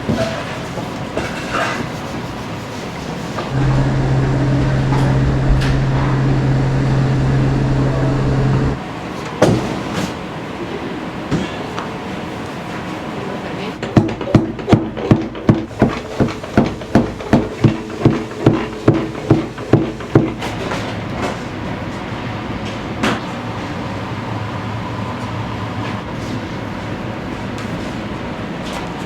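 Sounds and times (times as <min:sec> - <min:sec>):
steady kitchen hum: 0:00.0 - 0:09.2.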